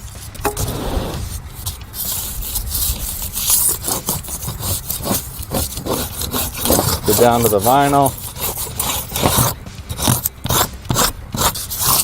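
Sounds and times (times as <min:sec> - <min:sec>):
hand tool scraping foam: 0:00.2 - 0:12.0.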